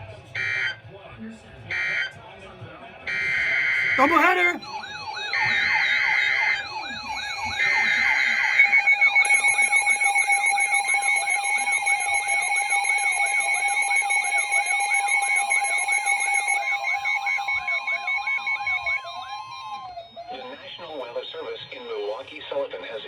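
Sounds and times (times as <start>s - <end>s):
rapid electronic beeping: 0.4s - 0.8s, 3.1s - 22.1s
siren wailing up and down: 0.4s - 0.8s, 1.7s - 2.1s, 3.1s - 22.0s
steady alert tone: 3.9s - 19.2s.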